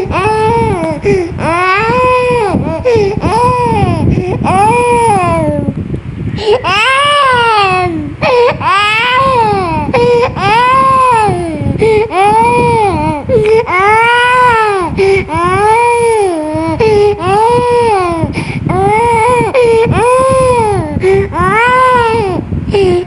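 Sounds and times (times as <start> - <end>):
young child crying: 6.4 - 23.0
child catching breath: 14.9 - 15.3, 18.3 - 18.7.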